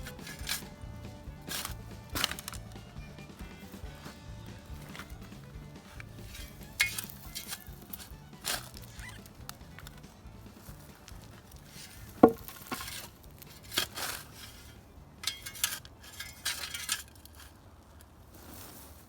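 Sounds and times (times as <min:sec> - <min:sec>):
shovel clinking on stone: 0:00.0 - 0:02.8, 0:04.8 - 0:10.0, 0:11.8 - 0:17.6
shovel scraping dirt: 0:00.0 - 0:19.0.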